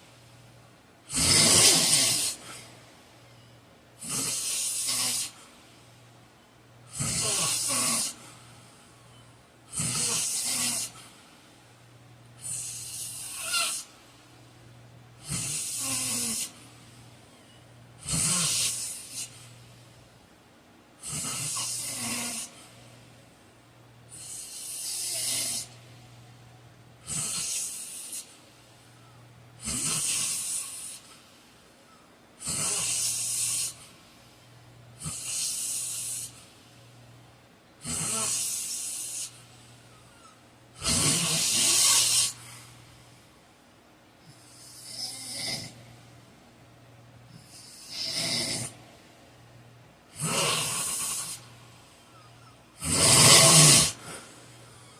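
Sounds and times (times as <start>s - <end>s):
faint low hum: 0.0s - 54.9s
man snoring: 1.1s - 2.6s, 4.0s - 5.4s, 6.9s - 8.2s, 9.7s - 11.0s, 15.2s - 16.6s, 18.0s - 19.3s, 21.0s - 22.6s, 24.1s - 25.8s, 27.0s - 28.3s, 29.6s - 31.0s, 32.4s - 33.8s, 35.0s - 36.4s, 37.8s - 39.4s, 40.8s - 42.4s, 44.5s - 45.8s, 47.4s - 48.8s, 50.1s - 51.5s, 52.8s - 54.2s.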